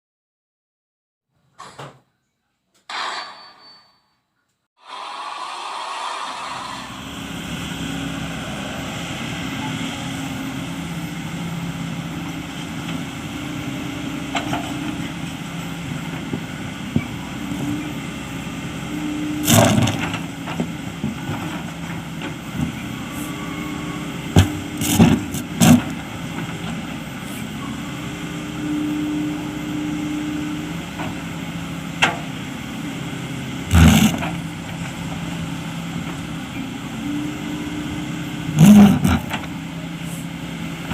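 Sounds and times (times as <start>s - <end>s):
excavator diesel engine running: 4.9s - 40.9s
bucket scraping rock: 24.4s - 26.0s, 33.7s - 34.4s, 38.6s - 39.4s.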